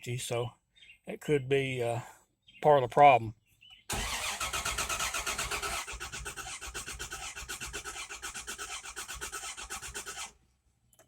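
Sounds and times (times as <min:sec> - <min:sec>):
engine cranking by starter motor: 0:03.9 - 0:10.4.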